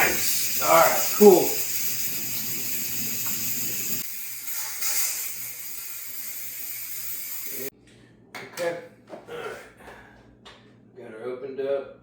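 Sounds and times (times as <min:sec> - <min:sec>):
steam hissing: 0:00.0 - 0:07.7.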